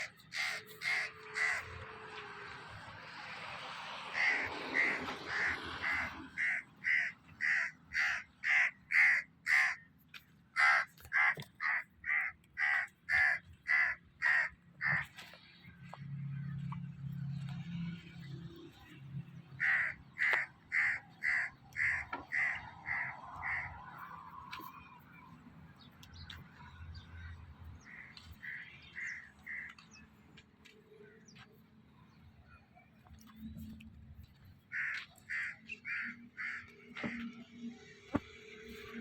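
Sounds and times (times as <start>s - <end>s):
animal harsh calls: 10.6s - 15.0s.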